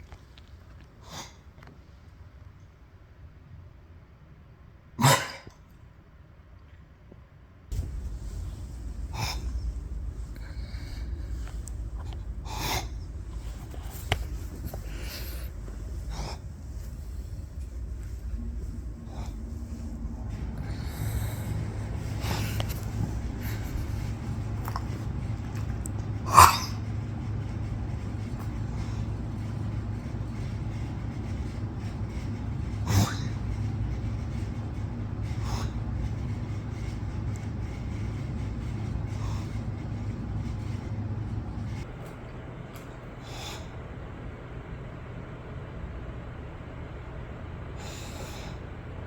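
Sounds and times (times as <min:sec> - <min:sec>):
short nasal cough: 0:05.0 - 0:05.6
snorting bursts through the nose: 0:07.7 - 0:30.4, 0:32.7 - 0:33.8
steady low hum: 0:07.7 - 0:49.0
steady low rumble: 0:07.7 - 0:49.0.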